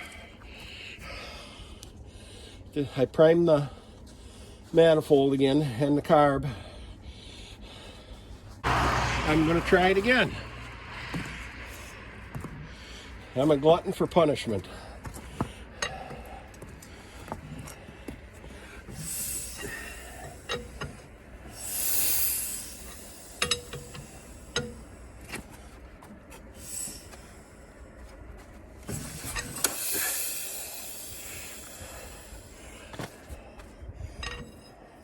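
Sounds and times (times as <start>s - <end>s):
hissing rushes of air: 18.9s - 25.0s, 26.5s - 27.5s, 28.9s - 32.9s.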